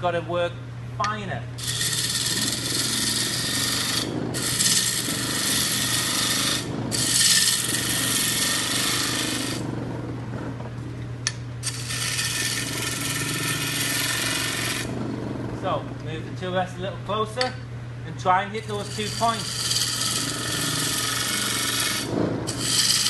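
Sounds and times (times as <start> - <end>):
turning tool cutting wood: 1.6 - 9.8, 11.6 - 15.7, 18.6 - 23.0
lathe motor hum: 1.6 - 16.6, 18.6 - 23.0.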